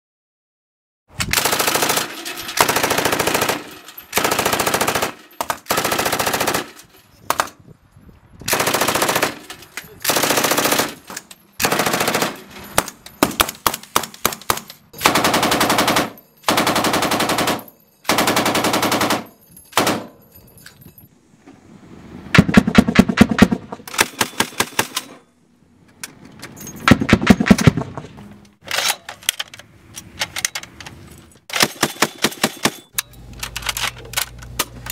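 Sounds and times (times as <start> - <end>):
automatic gunfire bursts: 11.6 - 12.4, 15.0 - 20.0
separate spaced-out gunshots: 22.3 - 25.0, 26.9 - 28.0.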